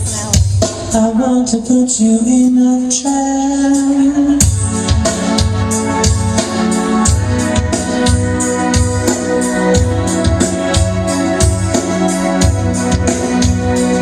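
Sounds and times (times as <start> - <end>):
steady drum beat: 0.0 - 14.0
keyboard organ chords: 0.7 - 14.0
pulsing bass line: 3.8 - 14.0.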